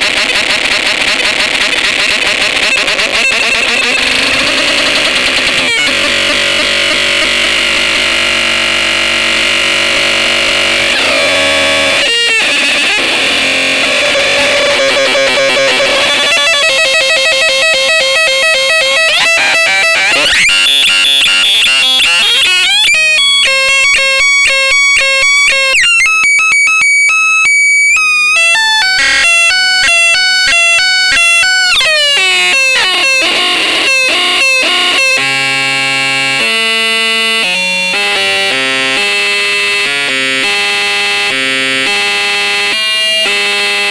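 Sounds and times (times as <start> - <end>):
distorted synthesizer tones: 0.0 - 24.0.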